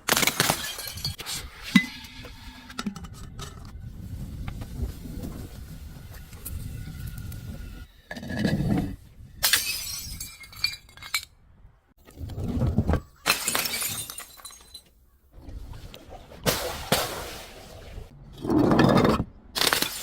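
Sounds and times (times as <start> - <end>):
glass bottles shattering: 0.1 - 1.2, 9.4 - 11.3, 13.2 - 14.9.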